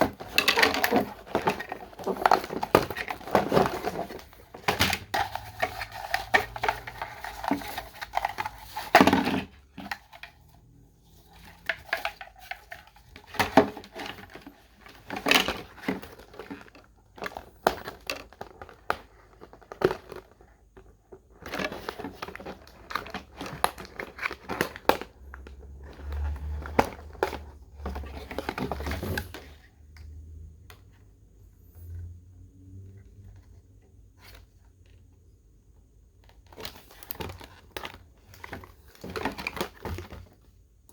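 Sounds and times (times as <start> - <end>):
plastic packaging crinkling: 0.0 - 10.4.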